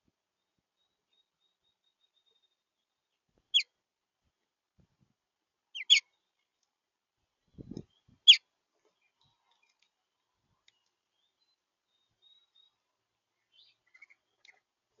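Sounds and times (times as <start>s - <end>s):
songbird chip calls: 5.8s - 6.2s, 7.8s - 8.4s.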